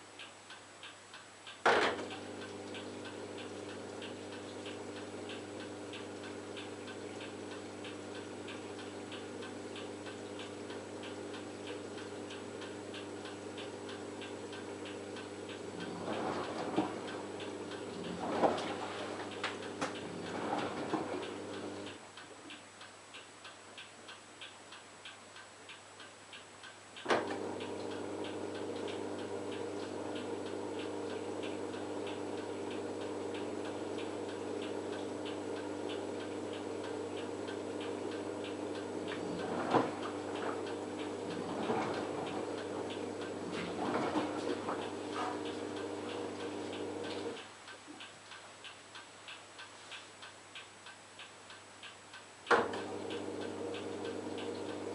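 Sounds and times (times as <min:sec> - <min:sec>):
even ticking: 0:00.2 - 0:54.9
washing machine hum: 0:01.6 - 0:22.1, 0:27.0 - 0:47.7, 0:52.4 - 0:54.9.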